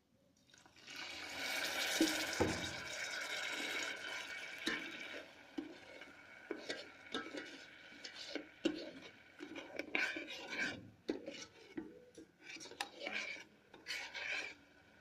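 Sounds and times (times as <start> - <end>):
water hissing on hot pan: 0.8 - 9.4.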